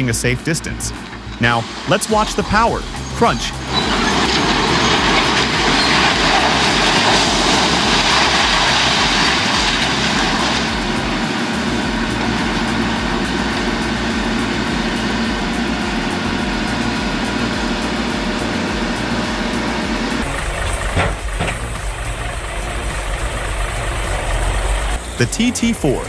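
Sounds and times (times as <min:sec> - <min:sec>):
loud rough noise: 0:00.7 - 0:26.0
heavy machine engine running: 0:02.2 - 0:26.0.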